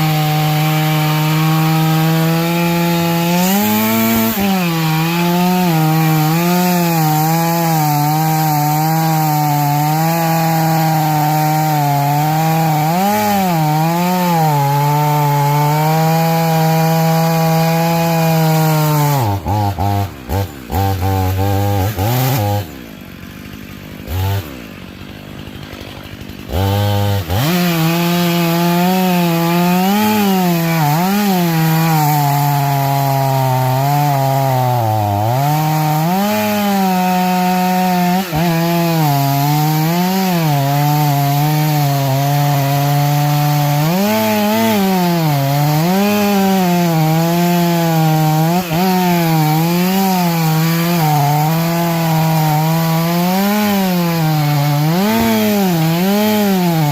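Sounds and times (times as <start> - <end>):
chainsaw cutting wood: 0.0 - 56.9.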